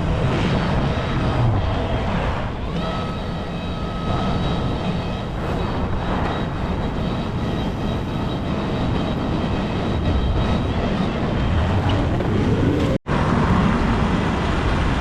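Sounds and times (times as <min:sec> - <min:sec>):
faint high whine: 0:00.0 - 0:12.0
heavy engine droning rumble: 0:00.0 - 0:15.0.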